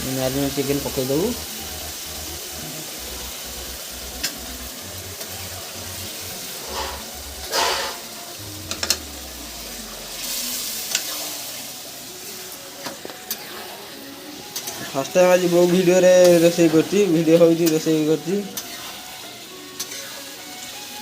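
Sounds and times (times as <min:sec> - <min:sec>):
chicken sizzling in oil: 0:00.0 - 0:21.0
spatula scraping pan: 0:06.5 - 0:08.2.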